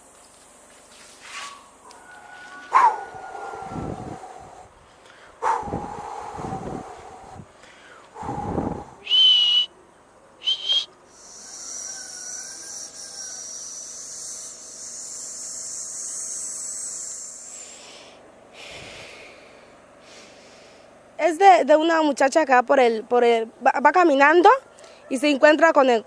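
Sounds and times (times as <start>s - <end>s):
long airy hissing whistle: 1.2s - 4.7s, 8.2s - 9.7s, 10.4s - 19.3s
short high whistles: 9.0s - 9.7s, 10.4s - 17.3s.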